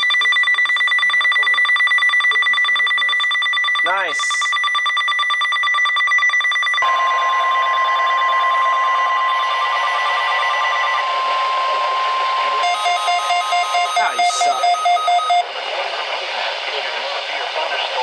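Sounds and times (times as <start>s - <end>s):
steady warning alarm tone: 0.0s - 15.5s
radio hiss: 10.1s - 18.0s.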